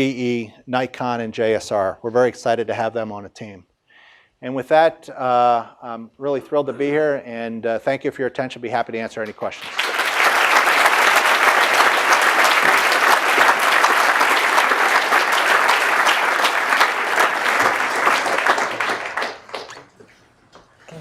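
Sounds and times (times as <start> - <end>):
audience applauding: 9.2 - 20.0.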